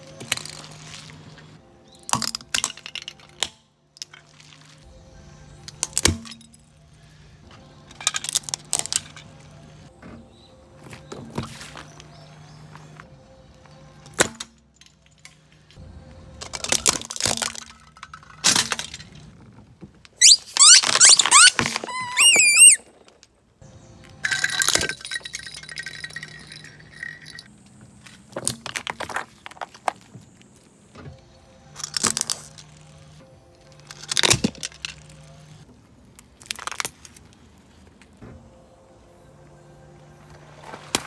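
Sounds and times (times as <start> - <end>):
loud squealing: 20.2 - 22.9
brittle objects crunching: 31.8 - 32.9, 36.2 - 37.8.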